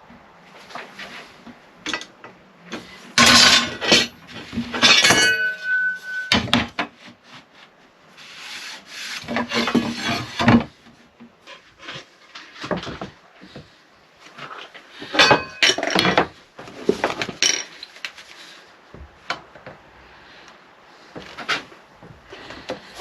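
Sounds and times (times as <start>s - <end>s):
short metallic ring: 4.9s - 6.4s
wood scraping on wood: 7.0s - 23.0s.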